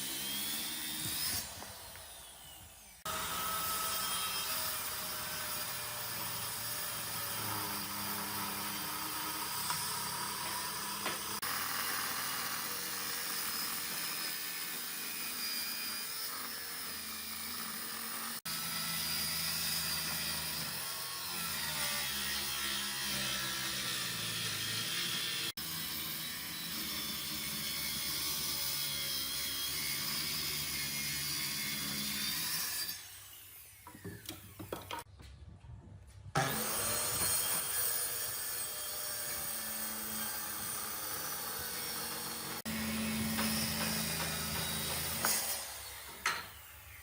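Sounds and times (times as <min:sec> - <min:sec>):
power tools working wood: 0:00.0 - 0:35.1, 0:36.4 - 0:47.0.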